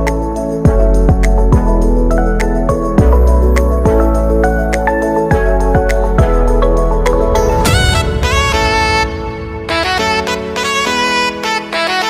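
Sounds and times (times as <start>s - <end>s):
reedy wind instrument melody: 7.0s - 12.0s.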